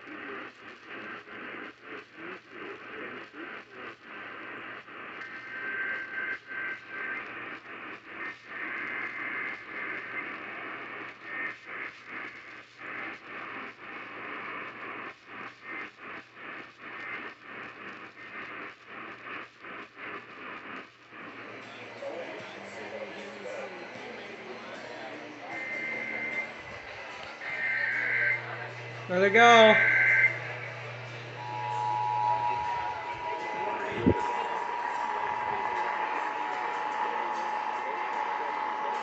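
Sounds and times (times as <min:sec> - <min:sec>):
radio static and hiss: 0:00.0 - 0:39.0.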